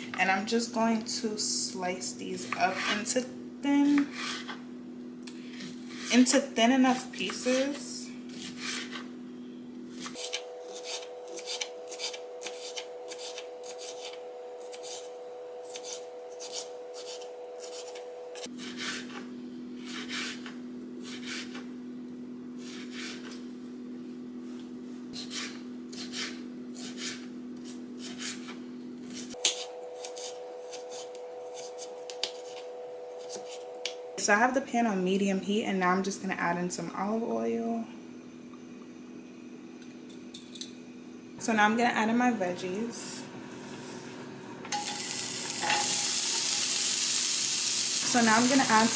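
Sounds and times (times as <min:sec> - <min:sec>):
steady low hum: 0:00.0 - 0:48.9
knife cutting on cutting board: 0:02.4 - 0:03.1, 0:03.9 - 0:04.6, 0:07.2 - 0:09.1, 0:19.8 - 0:21.7, 0:22.6 - 0:23.4, 0:25.2 - 0:32.6.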